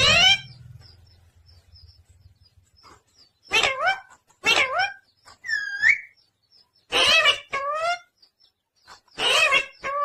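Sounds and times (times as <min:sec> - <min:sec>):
parrot squawking: 0:00.0 - 0:00.6, 0:03.5 - 0:06.1, 0:06.9 - 0:08.1, 0:09.2 - 0:10.0.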